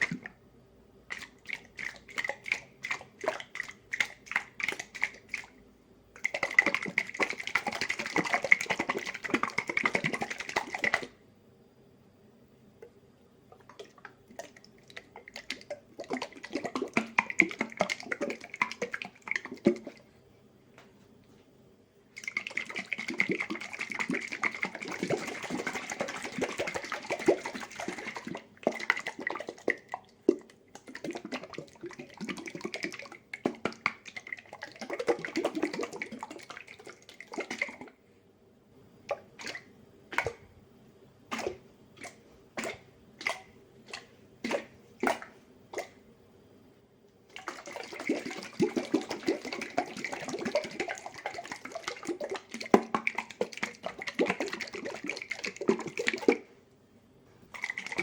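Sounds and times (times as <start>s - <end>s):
sauce sloshing in shaken jar: 1.1s - 5.6s, 6.2s - 11.1s, 13.7s - 20.0s, 22.2s - 38.0s, 47.3s - 56.5s, 57.5s - 58.0s.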